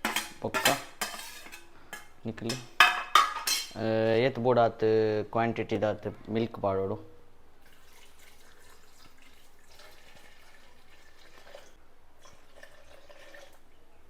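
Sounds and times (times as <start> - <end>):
milk pouring: 7.6 - 13.7.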